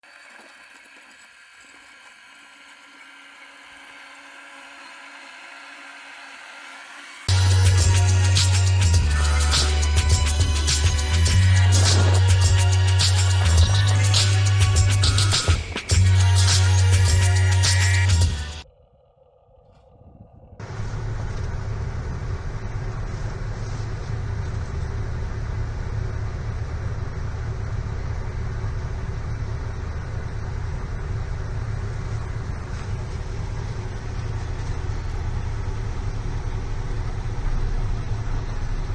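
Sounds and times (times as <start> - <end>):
electric motors and gearing drone: 0.0 - 19.8, 20.5 - 38.9
small electric motor whirring: 0.1 - 18.6.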